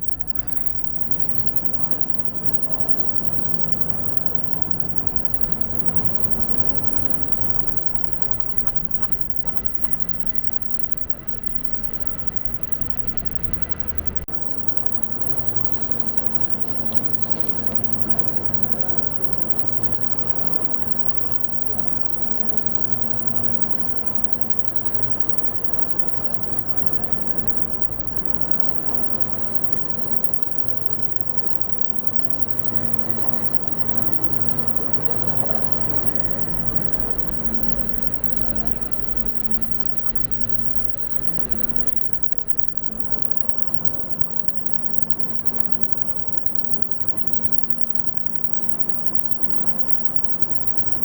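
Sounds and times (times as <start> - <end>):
street traffic noise: 0.0 - 16.9
engine humming nearby: 0.0 - 47.5
high-pitched pulsing tones: 0.0 - 51.0
low rumble of traffic: 0.0 - 51.0.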